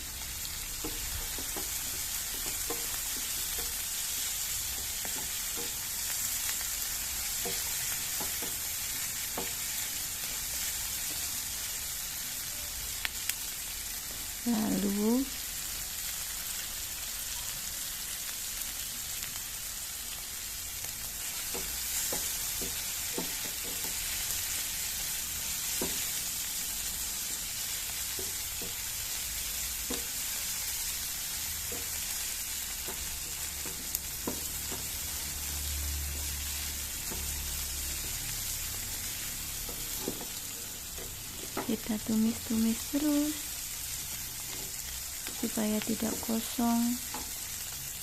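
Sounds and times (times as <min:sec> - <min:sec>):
food sizzling in hot oil: 0:00.0 - 0:48.0
spatula knocking pan: 0:00.8 - 0:06.0, 0:07.0 - 0:09.7, 0:21.4 - 0:24.2, 0:25.7 - 0:26.1, 0:29.7 - 0:30.2, 0:32.8 - 0:35.1.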